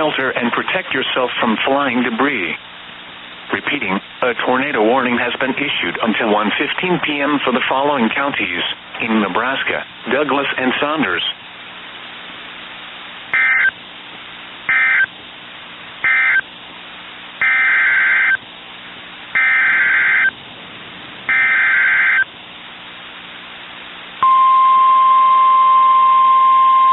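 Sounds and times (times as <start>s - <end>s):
raspy two-pitch data bursts: 13.4s - 13.7s, 14.7s - 15.1s, 16.0s - 16.4s, 17.4s - 18.4s, 19.4s - 20.3s, 21.3s - 22.3s
steady warning alarm tone: 13.4s - 13.8s, 14.7s - 15.1s, 16.0s - 16.4s, 17.4s - 18.4s, 19.4s - 20.4s, 21.3s - 22.3s.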